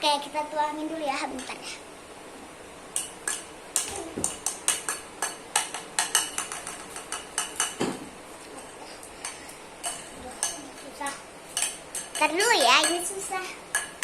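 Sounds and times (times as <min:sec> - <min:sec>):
utensils clinking against a dish: 0:03.0 - 0:08.0, 0:08.6 - 0:14.0.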